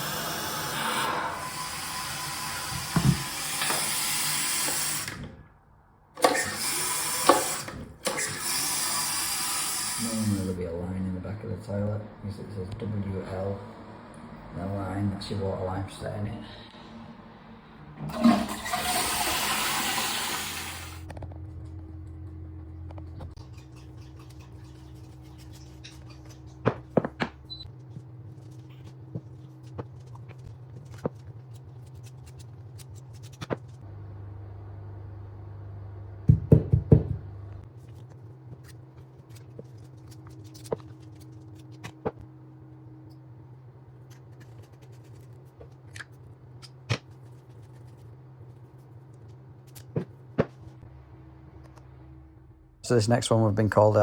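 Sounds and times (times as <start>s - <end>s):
cistern refilling: 18.0s - 21.0s
toilet flushing water rush: 18.0s - 21.0s
steady low hum: 37.2s - 54.0s.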